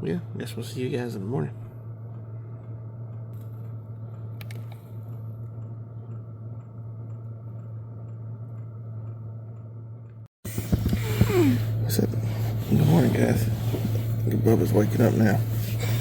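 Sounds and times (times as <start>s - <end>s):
heater humming: 0.0s - 16.0s
faint regular ticking: 1.6s - 10.2s.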